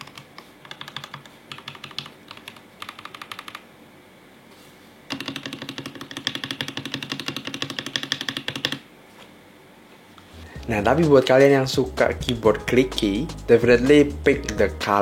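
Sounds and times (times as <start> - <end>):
mechanical keyboard typing: 0.0 - 3.6, 5.1 - 8.8.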